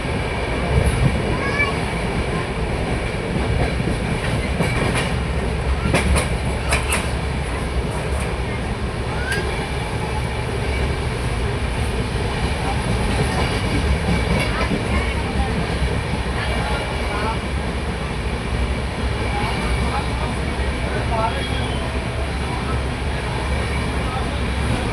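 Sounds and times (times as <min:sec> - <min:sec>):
train rumbling on track: 0:00.0 - 0:24.9.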